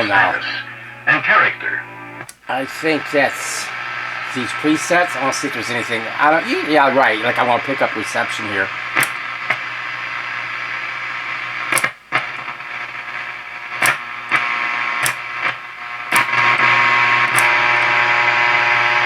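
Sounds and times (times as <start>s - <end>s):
radio static and hum: 0.0s - 19.0s
push-button clicks: 2.2s - 2.4s, 9.0s - 9.6s, 11.7s - 12.0s, 13.8s - 14.4s, 15.0s - 15.3s, 16.1s - 16.4s, 17.3s - 17.6s.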